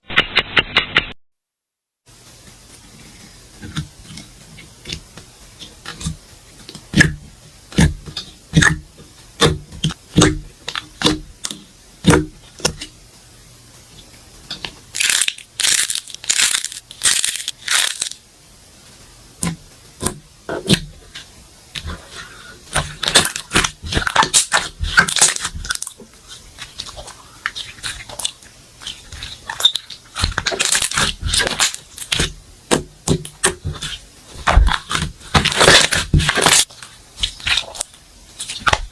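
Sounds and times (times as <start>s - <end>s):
slime popping and crackling: 3.6s - 12.9s, 14.6s - 18.2s, 22.7s - 38.9s.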